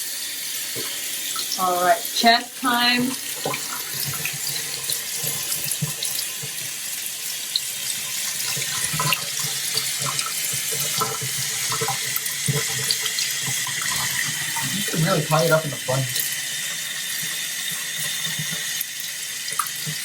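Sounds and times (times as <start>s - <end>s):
water running over dog: 0.7s - 6.8s, 7.5s - 20.0s.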